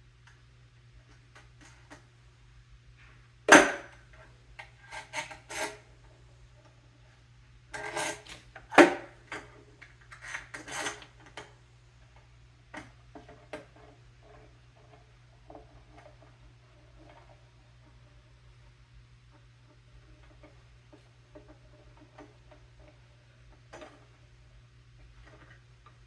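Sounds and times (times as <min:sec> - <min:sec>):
parts clicking and rubbing: 0:07.7 - 0:26.0.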